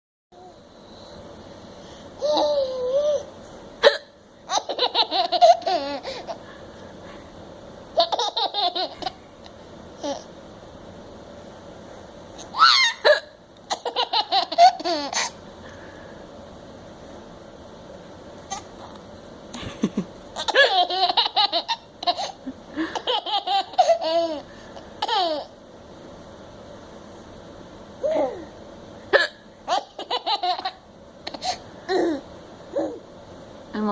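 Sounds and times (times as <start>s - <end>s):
baby laughing: 2.2s - 6.4s, 8.0s - 9.3s, 12.4s - 15.4s, 18.5s - 19.0s, 19.6s - 25.6s, 28.0s - 28.5s, 29.1s - 33.0s
adult hiccup: 29.1s - 29.4s.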